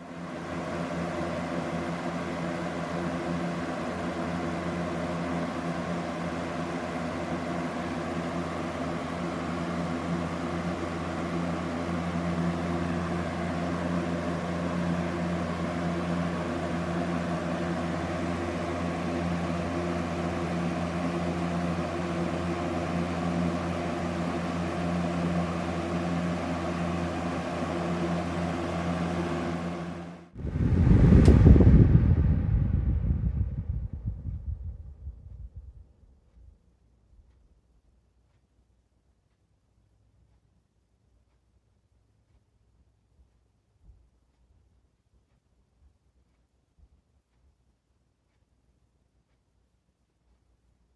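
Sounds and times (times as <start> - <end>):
fan air rushing: 0.0 - 36.6
fan motor hum: 0.0 - 50.9.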